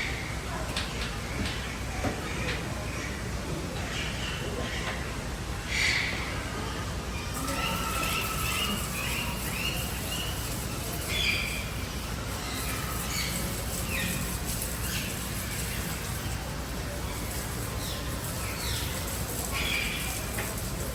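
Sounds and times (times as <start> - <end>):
steady background noise: 0.0 - 20.9
birds chirping and calling: 5.7 - 6.4, 7.1 - 20.9.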